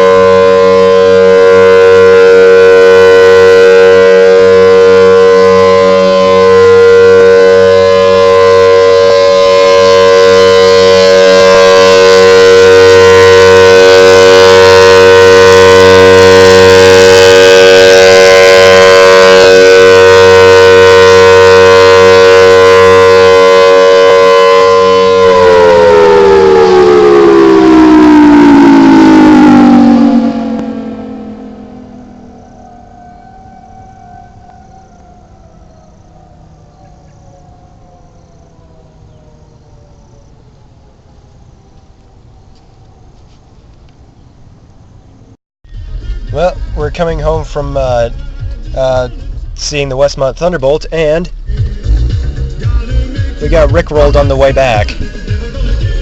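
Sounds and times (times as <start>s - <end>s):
outdoor warning siren: 0.0s - 56.0s.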